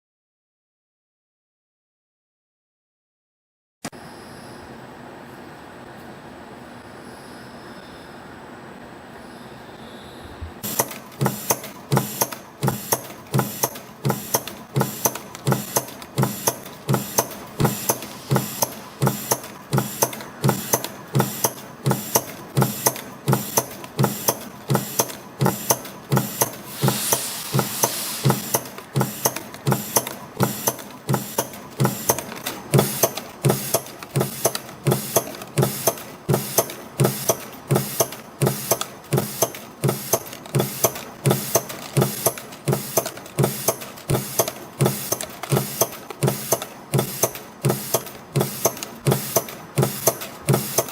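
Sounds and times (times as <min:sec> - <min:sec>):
machine clattering clicks: 0:10.6 - 0:26.6, 0:27.8 - 0:50.9
brief hiss: 0:17.2 - 0:20.2, 0:26.5 - 0:29.4.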